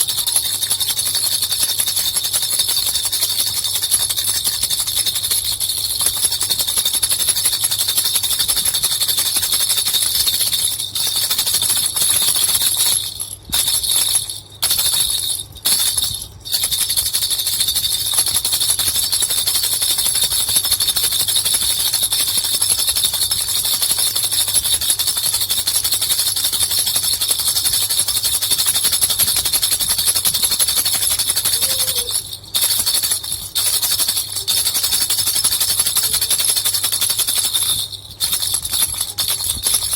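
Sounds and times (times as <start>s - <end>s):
baby rattle bells jingling: 0.0s - 39.9s.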